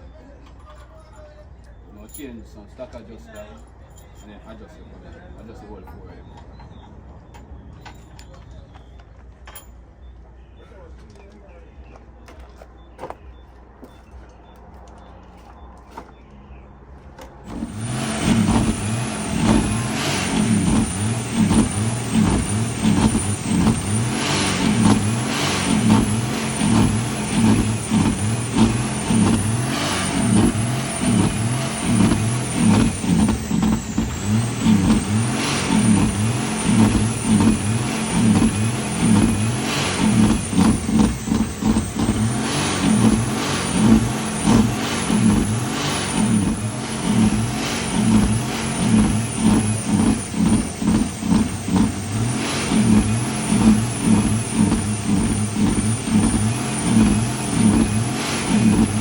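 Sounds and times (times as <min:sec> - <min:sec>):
truck diesel engine running: 0:17.4 - 0:59.0.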